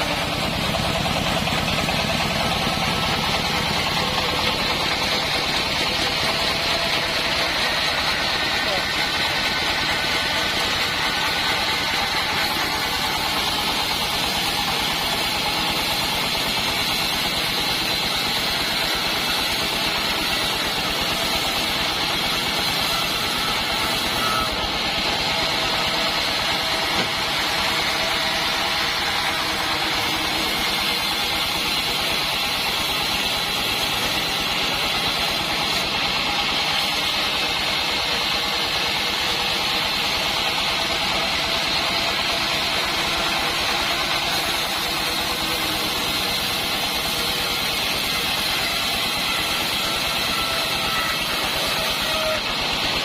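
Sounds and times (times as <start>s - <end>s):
high-pitched whine: 0.0s - 15.8s, 17.7s - 35.9s
band sawmill running: 0.0s - 53.0s.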